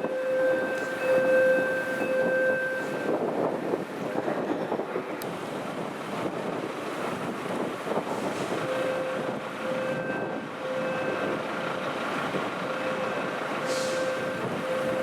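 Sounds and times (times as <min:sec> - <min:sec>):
fire engine running: 0:00.0 - 0:15.0
wind noise on microphone: 0:00.0 - 0:15.0
short hiss: 0:13.7 - 0:14.1.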